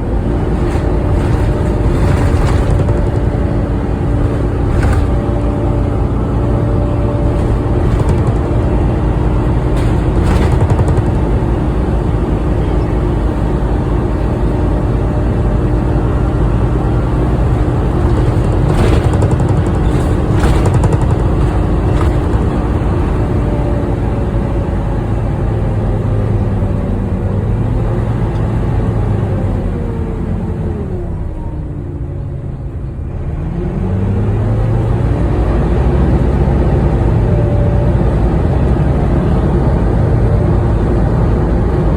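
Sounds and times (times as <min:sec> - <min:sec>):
knocks and rattles: 0:00.0 - 0:13.5, 0:16.0 - 0:24.3
bus engine rumble: 0:00.0 - 0:41.9
bus whine: 0:00.0 - 0:41.9.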